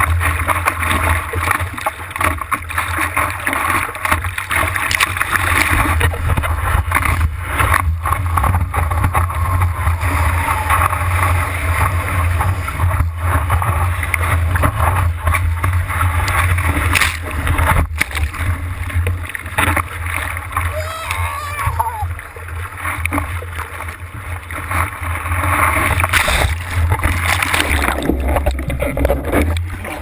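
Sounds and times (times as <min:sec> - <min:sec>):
wind rumble on microphone: 0:00.0 - 0:30.0
ocean surf breaking: 0:07.4 - 0:13.5, 0:16.6 - 0:23.3.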